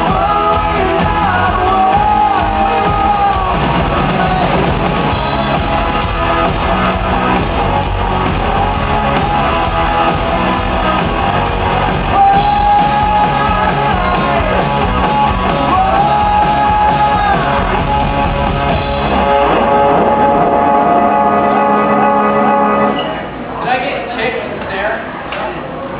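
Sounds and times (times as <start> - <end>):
rock band playing live: 0.0 - 23.4.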